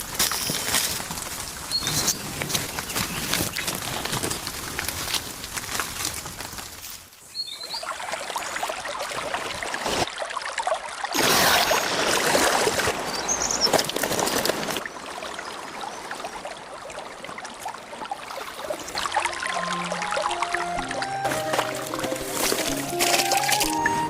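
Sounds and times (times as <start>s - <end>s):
water running and splashing: 7.6s - 24.0s.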